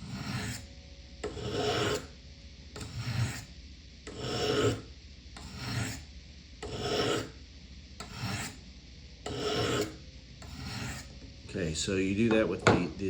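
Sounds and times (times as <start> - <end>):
knife scraping on sharpening stones: 0.0 - 2.1, 2.8 - 3.5, 4.1 - 4.8, 5.4 - 6.0, 6.6 - 7.3, 8.0 - 8.6, 9.3 - 11.1.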